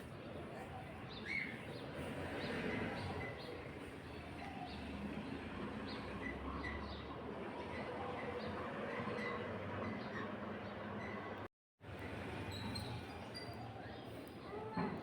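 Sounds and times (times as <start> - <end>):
small birds chirping: 0.0 - 7.2.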